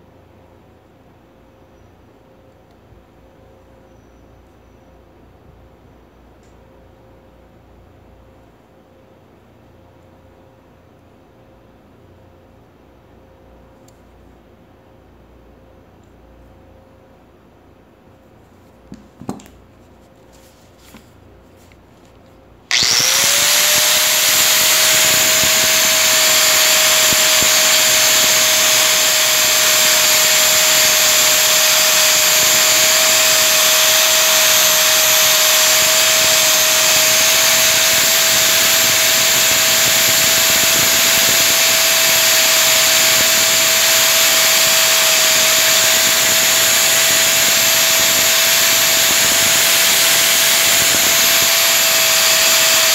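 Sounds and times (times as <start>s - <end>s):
electric machine whining and rushing: 22.7s - 52.9s.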